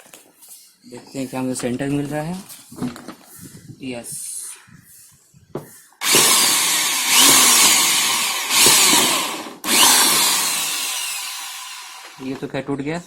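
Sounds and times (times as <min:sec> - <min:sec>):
electric hand drill boring plastic: 0:06.0 - 0:12.3.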